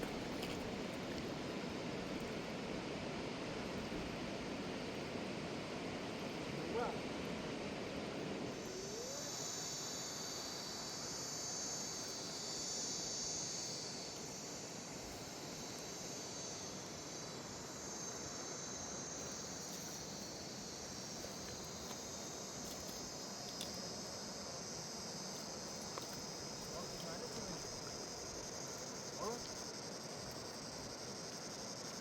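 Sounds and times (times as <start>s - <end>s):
high-pitched insect trill: 8.5s - 32.0s.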